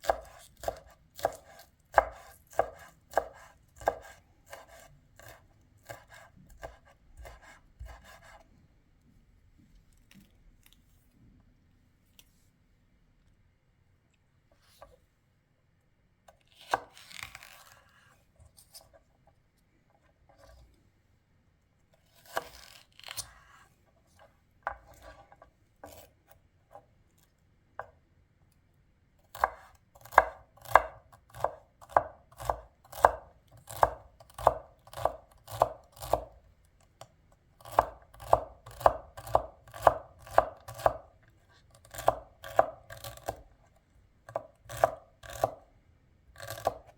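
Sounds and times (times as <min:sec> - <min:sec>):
knife chopping on cutting board: 0:00.0 - 0:08.4, 0:16.6 - 0:17.6, 0:22.1 - 0:23.6, 0:24.7 - 0:26.1, 0:29.3 - 0:36.3, 0:37.6 - 0:41.1, 0:41.8 - 0:43.4, 0:44.3 - 0:45.6, 0:46.4 - 0:46.9.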